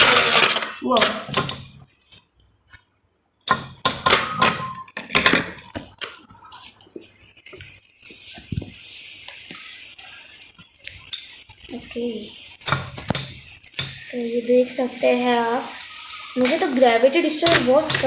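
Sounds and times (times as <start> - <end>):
spinning tops clacking: 0.0 - 1.8, 12.6 - 18.0
spinning tops whirring: 0.0 - 1.8, 8.1 - 18.0.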